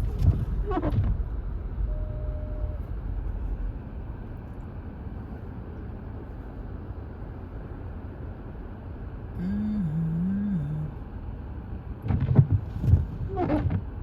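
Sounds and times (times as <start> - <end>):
road and engine rumble: 0.0 - 14.0
faint steady tone: 1.8 - 3.0, 9.3 - 11.1.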